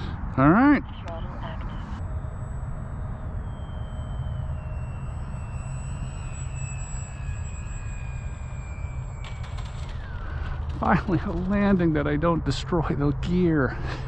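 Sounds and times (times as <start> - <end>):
low rumble: 1.0 - 14.0
model plane motor whining: 2.0 - 11.8.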